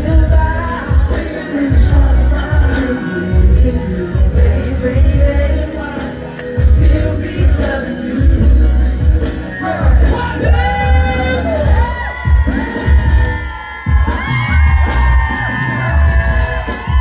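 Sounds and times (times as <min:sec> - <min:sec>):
man singing vocal runs: 0:00.0 - 0:12.0
heavy bass beat: 0:00.0 - 0:17.0
pop music over loudspeakers: 0:00.0 - 0:17.0.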